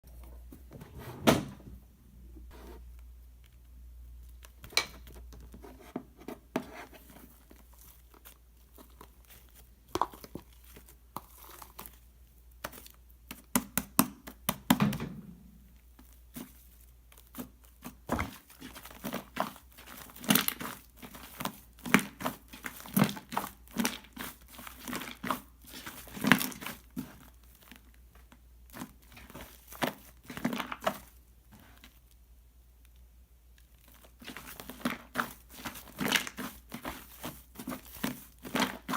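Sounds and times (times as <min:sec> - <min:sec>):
shaving foam squished by hand: 0:16.0 - 0:27.8, 0:33.8 - 0:38.9.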